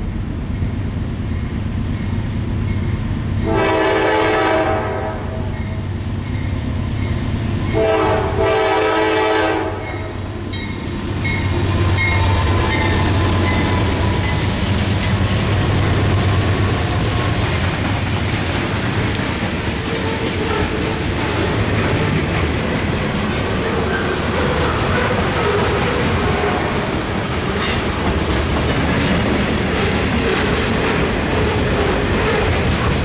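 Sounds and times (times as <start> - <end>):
train engine rumble: 0.0 - 33.0
train wheels on rails: 0.0 - 33.0
train air horn blasts: 3.4 - 5.6, 7.7 - 10.2.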